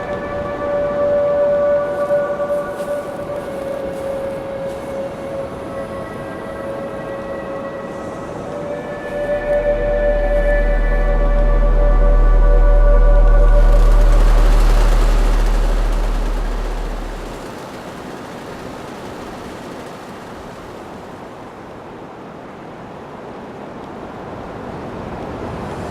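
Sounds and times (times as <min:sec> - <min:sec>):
street ambience roar: 0:00.0 - 0:25.9
deep bass note: 0:09.6 - 0:17.4.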